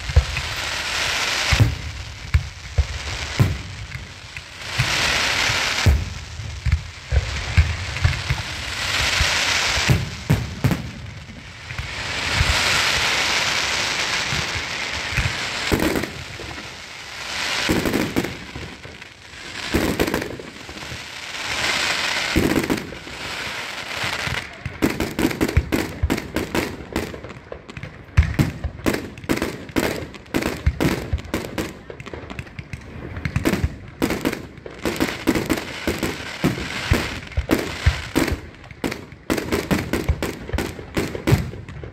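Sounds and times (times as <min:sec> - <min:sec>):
fireworks bangs: 0:00.0 - 0:41.9
fireworks hissing: 0:00.0 - 0:41.9
rapid firecracker cracks and pops: 0:00.0 - 0:41.9.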